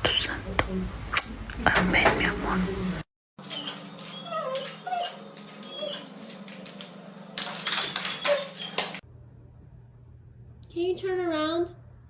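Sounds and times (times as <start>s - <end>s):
dog whimpering: 3.5s - 6.2s, 8.0s - 8.9s.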